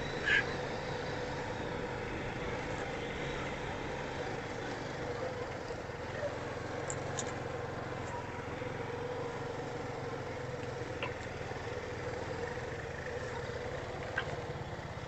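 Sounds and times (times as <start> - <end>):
atv engine droning: 0.0 - 15.0
faint ticks: 13.2 - 14.6.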